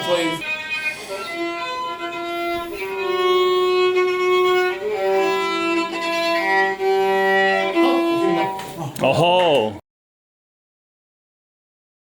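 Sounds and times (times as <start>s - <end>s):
solo violin long held notes: 0.0s - 8.7s.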